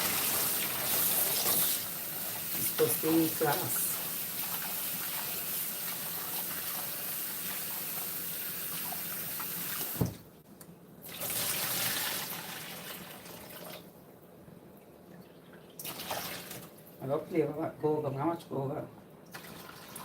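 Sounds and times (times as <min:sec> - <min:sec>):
tap water running into sink: 0:00.0 - 0:10.2.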